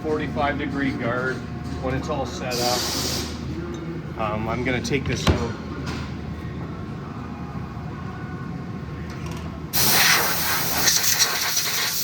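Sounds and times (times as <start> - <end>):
compressed air blow gun hissing: 2.6 - 3.4, 9.8 - 12.0
low machine hum: 3.3 - 9.8.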